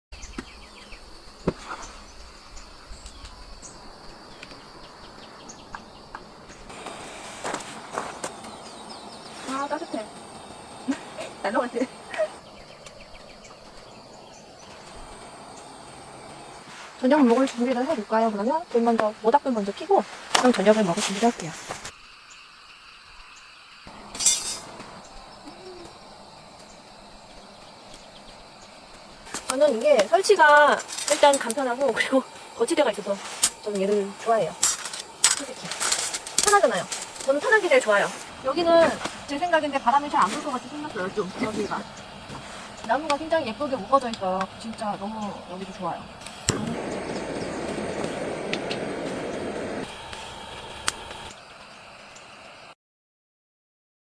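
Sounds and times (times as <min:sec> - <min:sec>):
insects droning: 0:00.2 - 0:52.8
loud hiss-like scrape: 0:06.6 - 0:12.4, 0:13.7 - 0:18.2, 0:19.7 - 0:22.0, 0:23.9 - 0:27.2, 0:28.9 - 0:51.4
bird chirps: 0:07.9 - 0:16.6.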